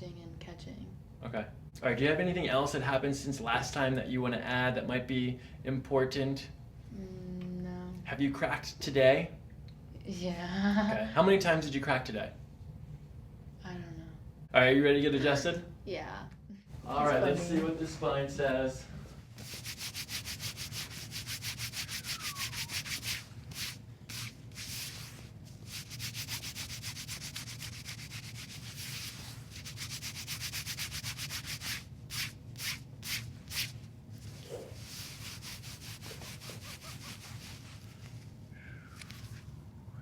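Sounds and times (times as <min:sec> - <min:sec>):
hands rubbing a person's back: 0:19.4 - 0:38.3.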